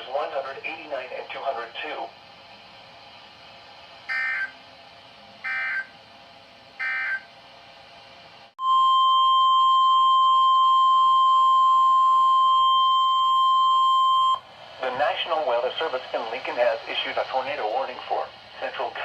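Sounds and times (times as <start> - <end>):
weather radio alarm tone: 4.1 - 4.6, 5.4 - 5.9, 6.8 - 7.2
screeching data bursts: 5.5 - 5.9.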